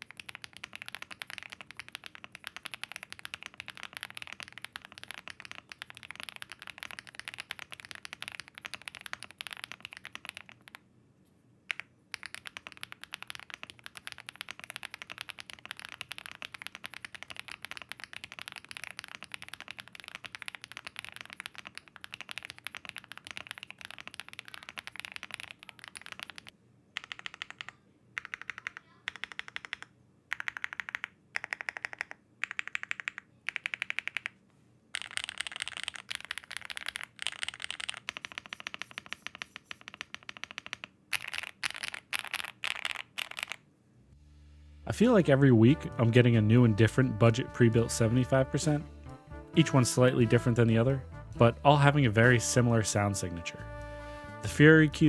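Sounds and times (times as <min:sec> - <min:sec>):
mechanical keyboard typing: 0:00.0 - 0:10.8, 0:11.7 - 0:34.4, 0:35.0 - 0:43.6.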